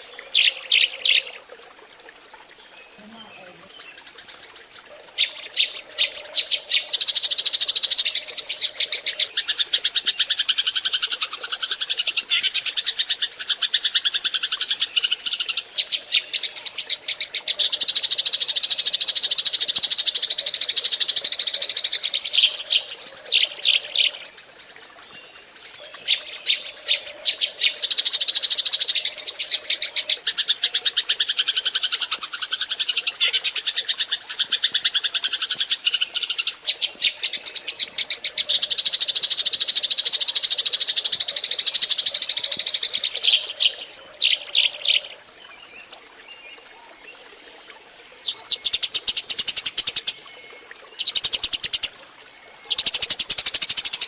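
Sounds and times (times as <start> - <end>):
sparrows chirping: 48.2 - 50.2, 51.0 - 51.9, 52.7 - 54.0.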